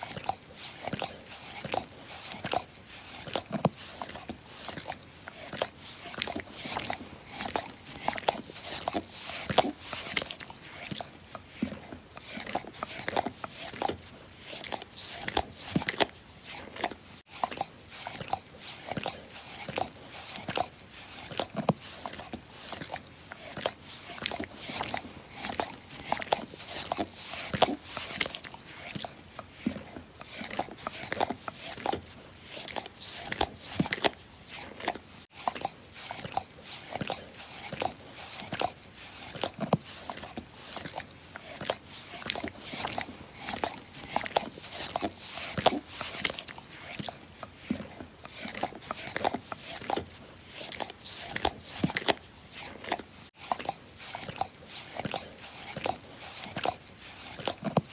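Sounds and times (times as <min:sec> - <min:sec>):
dog licking and slurping: 0:00.0 - 0:57.9.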